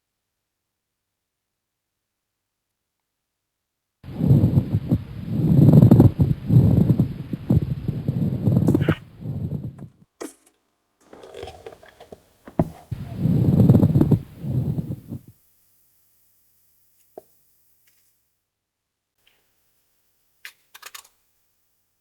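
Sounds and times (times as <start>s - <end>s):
breath sounds through stethoscope: 4.1s - 9.9s, 11.0s - 15.4s.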